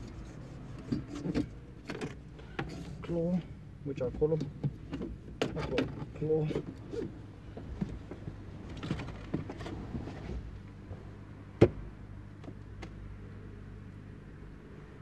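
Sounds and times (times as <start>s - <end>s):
small clicks and rustles: 7.8s - 10.1s.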